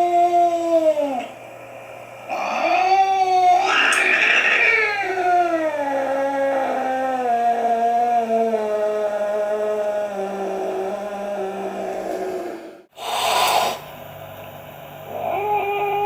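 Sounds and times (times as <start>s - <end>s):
cat yowling: 2.3s - 12.7s, 15.1s - 16.0s
cat hissing: 2.3s - 13.9s.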